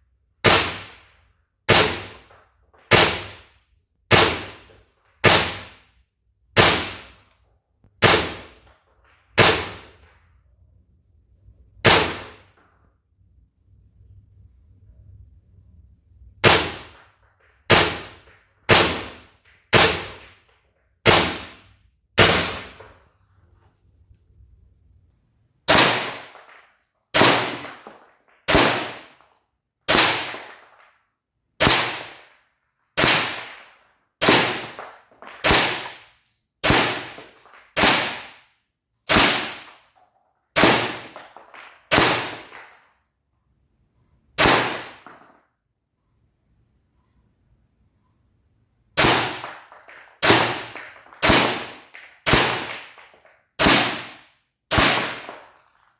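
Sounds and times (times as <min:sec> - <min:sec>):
airsoft rifle shots: 0:00.4 - 0:01.1, 0:01.7 - 0:02.3, 0:02.9 - 0:03.5, 0:04.1 - 0:05.8, 0:06.6 - 0:07.2, 0:08.0 - 0:08.6, 0:09.4 - 0:10.0, 0:11.8 - 0:12.5, 0:16.4 - 0:17.1, 0:17.7 - 0:20.4, 0:21.0 - 0:23.0, 0:25.7 - 0:26.6, 0:27.2 - 0:29.2, 0:29.9 - 0:30.8, 0:31.6 - 0:32.3, 0:33.0 - 0:38.4, 0:39.1 - 0:39.8, 0:40.6 - 0:42.8, 0:44.4 - 0:45.4, 0:49.0 - 0:55.5.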